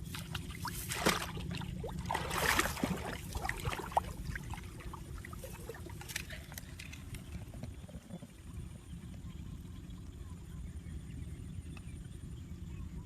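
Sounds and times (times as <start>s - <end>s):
water splashing and trickling: 0.0s - 8.3s.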